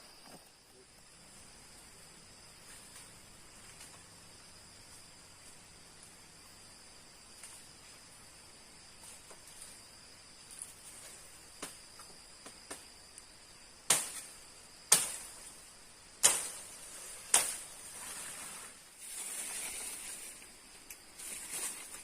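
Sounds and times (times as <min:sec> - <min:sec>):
high insect chirring: 0:00.0 - 0:22.0
rustling: 0:16.4 - 0:22.0.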